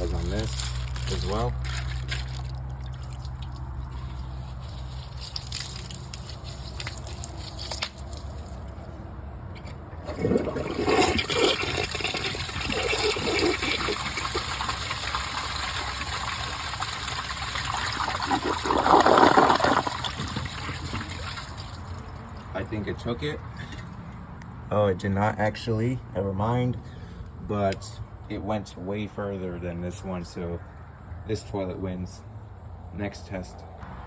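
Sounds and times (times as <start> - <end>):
toilet flushing with gurgles: 10.0 - 22.5.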